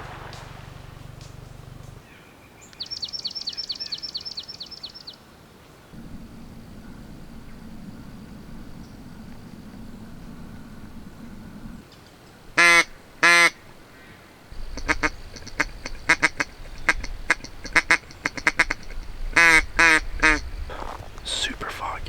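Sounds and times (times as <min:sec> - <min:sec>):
duck quacking: 0:12.6 - 0:13.6, 0:14.6 - 0:22.0.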